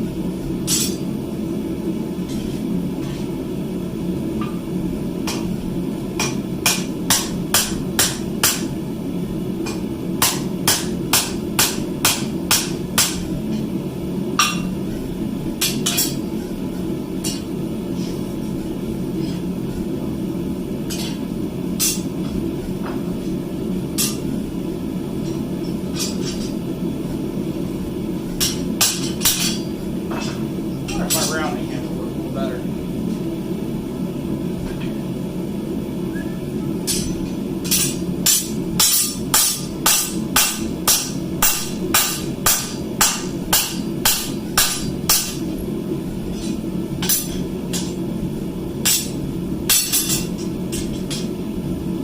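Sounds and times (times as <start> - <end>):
hammer striking steel on anvil: 6.2 - 8.7, 9.6 - 13.7, 14.4 - 14.9, 15.6 - 16.5, 17.2 - 17.5, 21.8 - 22.1, 24.0 - 24.3, 28.3 - 31.5, 36.8 - 45.5, 46.3 - 48.0, 48.8 - 51.4.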